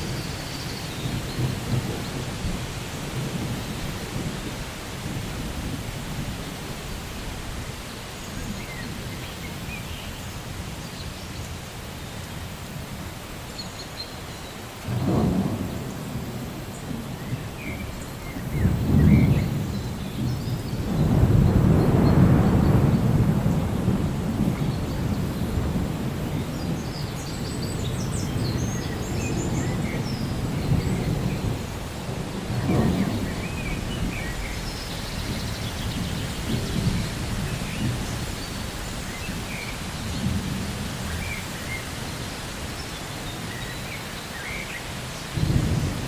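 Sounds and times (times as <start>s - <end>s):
thunder rumbling: 0.0s - 7.8s, 14.8s - 41.8s, 45.3s - 46.0s
steady rain: 0.0s - 46.0s.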